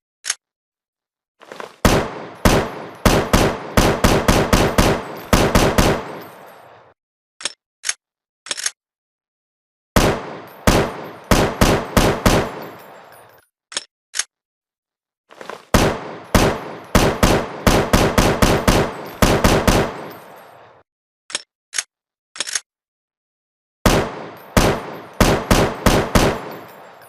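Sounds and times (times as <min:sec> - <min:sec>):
rifle shots echoing: 0:01.8 - 0:06.8, 0:10.0 - 0:13.1, 0:15.7 - 0:20.7, 0:23.8 - 0:27.0
metallic gun clicks: 0:07.4 - 0:08.8, 0:21.3 - 0:22.7.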